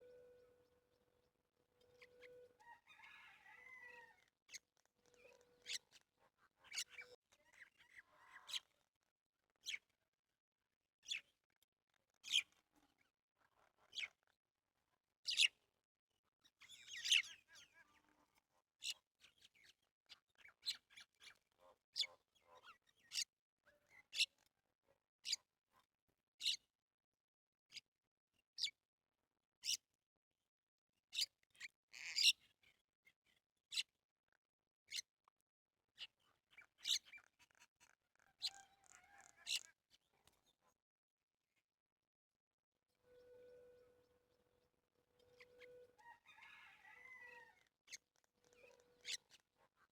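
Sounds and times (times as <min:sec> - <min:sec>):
small birds chirping: 0:04.5 - 0:08.8, 0:36.0 - 0:40.6.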